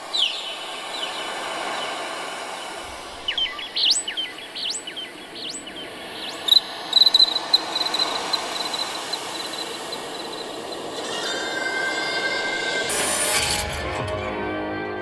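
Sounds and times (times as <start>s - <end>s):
steady hiss: 0.0s - 13.3s
birds chirping: 2.9s - 12.4s
high insect-like trill: 6.1s - 13.8s.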